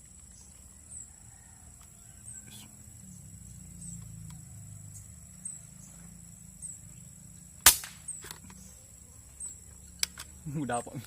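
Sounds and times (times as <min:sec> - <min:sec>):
air rifle shot: 0:07.6 - 0:08.1.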